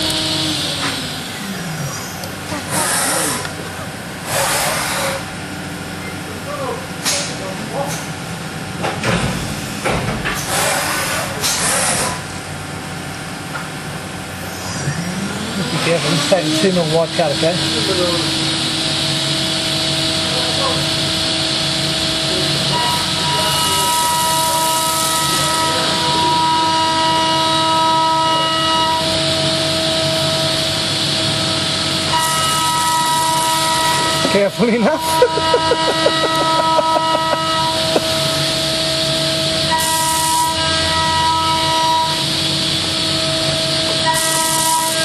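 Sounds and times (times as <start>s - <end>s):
milling machine hum: 0.0s - 45.0s
hissing cutting noise: 14.3s - 40.6s.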